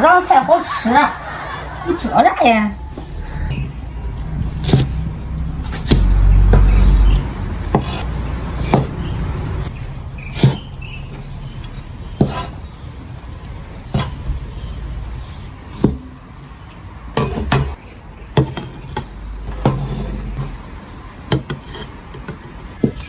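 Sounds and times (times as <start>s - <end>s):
low steady hum: 1.2s - 12.2s
knife chopping on wooden board: 8.6s - 9.1s.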